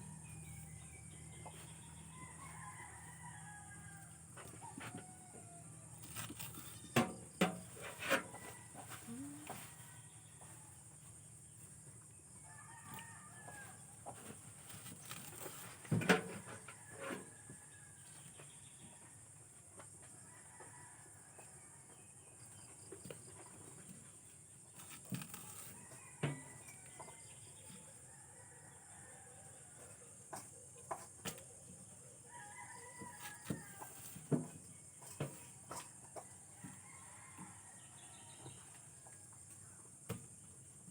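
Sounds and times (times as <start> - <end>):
rooster crowing: 1.5 - 6.0, 12.4 - 13.8, 32.3 - 34.2.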